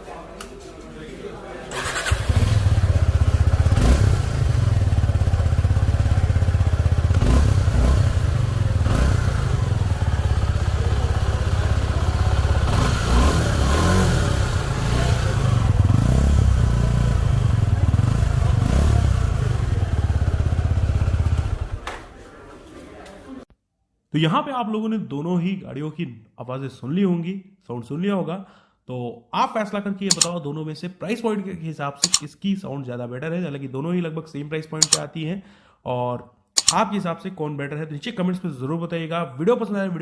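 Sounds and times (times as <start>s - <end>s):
motorcycle engine running: 1.9s - 21.9s.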